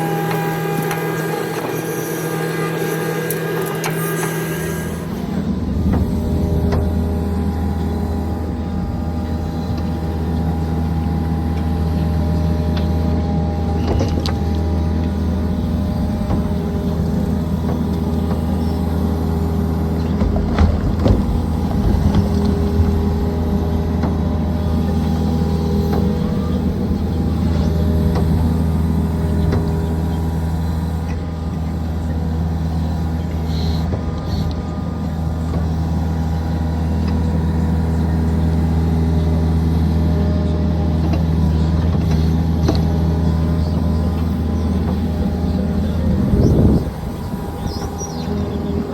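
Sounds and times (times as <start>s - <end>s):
excavator diesel engine: 0.0s - 48.9s
knocks and clunks: 20.1s - 23.1s.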